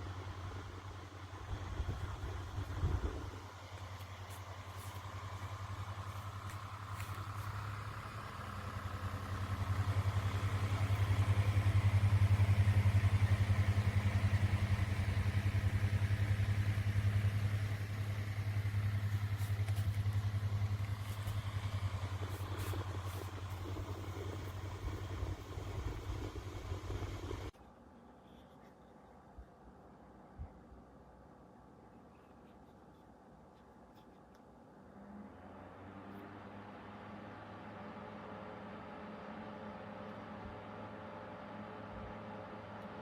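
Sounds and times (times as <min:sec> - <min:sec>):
desk fan humming: 0:17.5 - 0:27.5.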